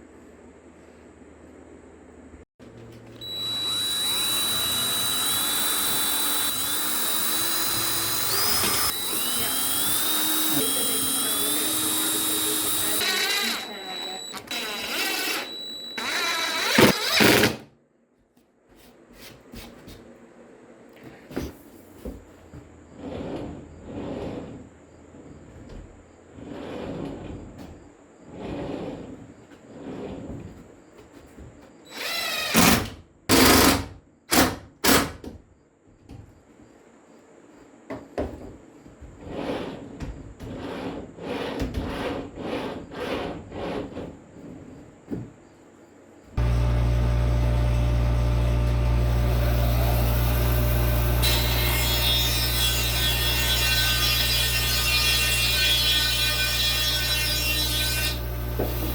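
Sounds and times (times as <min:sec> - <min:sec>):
power drill motor running: 0:03.1 - 0:17.5, 0:31.9 - 0:32.8, 0:46.4 - 0:54.8, 0:58.1 - 0:58.9.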